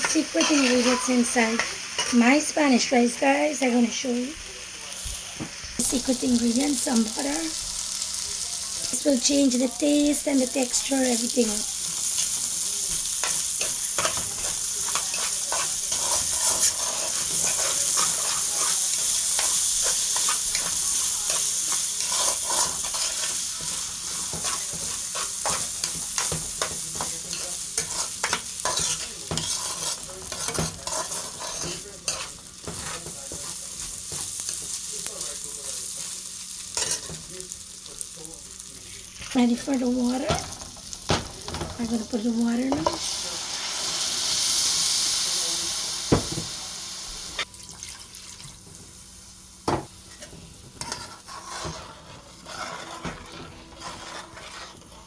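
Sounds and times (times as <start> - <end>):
rice sizzling in oil: 0.0 - 55.0
utensil scraping a pot: 13.2 - 34.7, 50.1 - 55.0.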